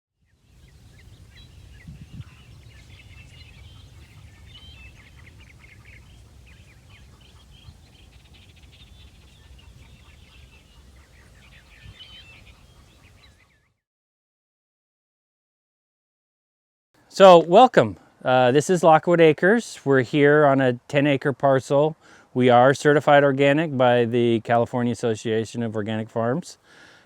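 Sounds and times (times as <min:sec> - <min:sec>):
small birds chirping: 0:00.2 - 0:13.8.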